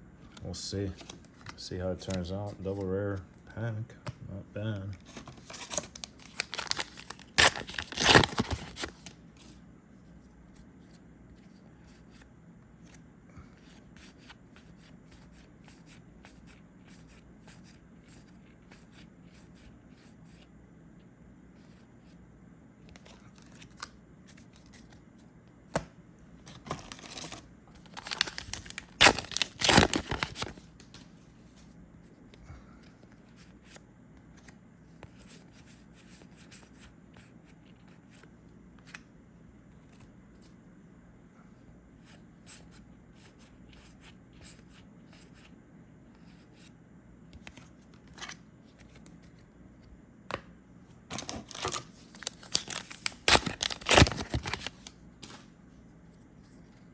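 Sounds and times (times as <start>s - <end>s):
foil pack tearing and crinkling: 5.3s - 9.1s, 26.5s - 30.6s, 51.1s - 55.4s.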